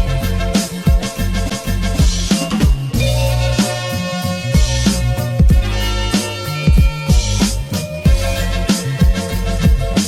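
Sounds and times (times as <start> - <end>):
band music: 0.0 - 10.0
bass: 0.0 - 10.0
held pitched notes: 0.0 - 10.0
drum hits: 1.8 - 4.0, 4.6 - 5.7, 6.7 - 7.4.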